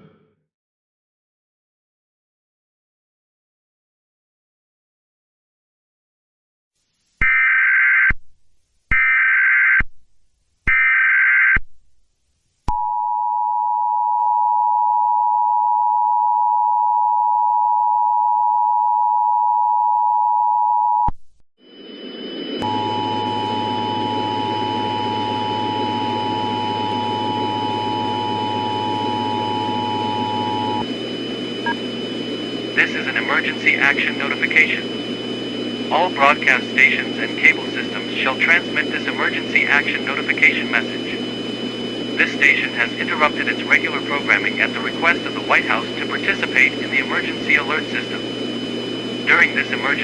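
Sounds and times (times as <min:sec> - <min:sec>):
low hum: 0:21.7 - 0:50.0
warbling data tones: 0:21.7 - 0:50.0.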